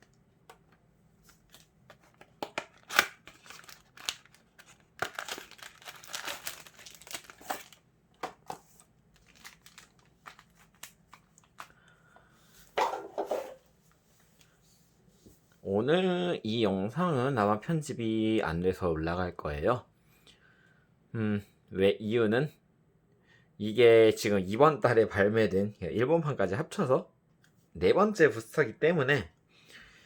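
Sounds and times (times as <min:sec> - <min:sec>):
packaging crinkling and tearing: 0:01.3 - 0:11.8.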